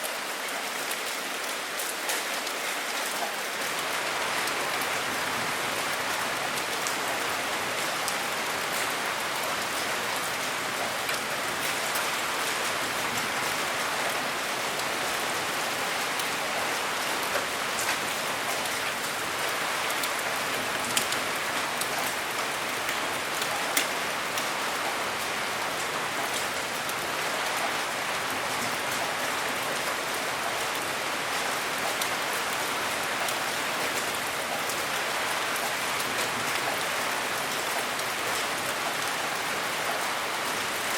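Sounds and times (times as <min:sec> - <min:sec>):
steady rain hiss: 0:00.0 - 0:40.9
raindrops ticking: 0:17.2 - 0:26.9.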